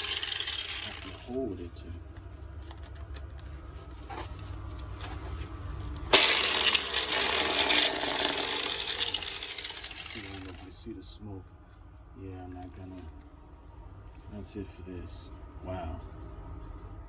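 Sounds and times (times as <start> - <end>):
angle grinder running: 0.0 - 1.4, 6.1 - 10.7.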